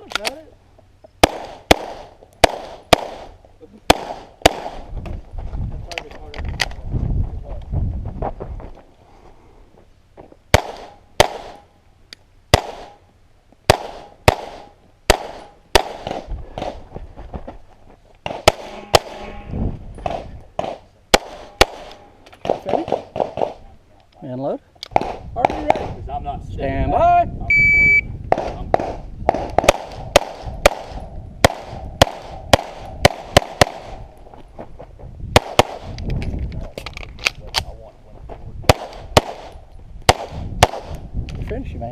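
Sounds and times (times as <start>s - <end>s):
pistol shots: 1.2s - 3.3s, 3.9s - 4.8s, 10.5s - 11.7s, 12.5s - 13.0s, 13.7s - 16.8s, 18.2s - 19.3s, 20.0s - 23.6s, 24.9s - 25.9s, 28.3s - 34.0s, 35.3s - 35.9s, 38.7s - 41.0s.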